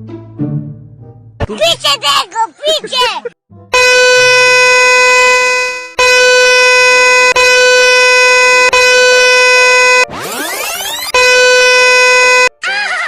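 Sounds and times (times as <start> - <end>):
train horn through speaker: 3.8 - 10.0.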